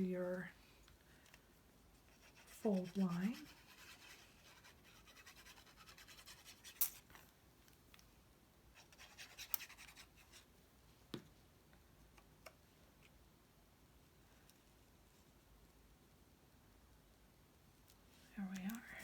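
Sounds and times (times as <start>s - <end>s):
paper rubbing strokes: 2.1s - 6.8s.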